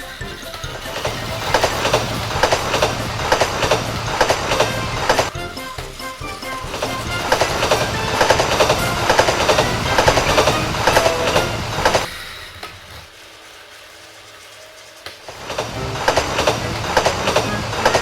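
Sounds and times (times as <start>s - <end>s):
rhythmic track clacking: 0.0s - 13.3s, 14.4s - 18.0s
toy train motor whir: 0.0s - 18.0s.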